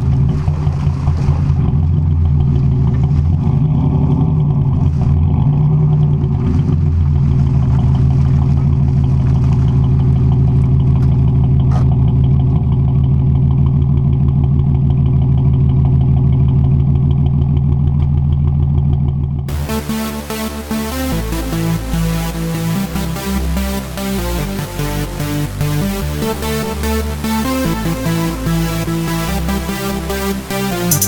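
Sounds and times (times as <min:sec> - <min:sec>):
car engine idling with throttle blips: 0:00.0 - 0:19.6.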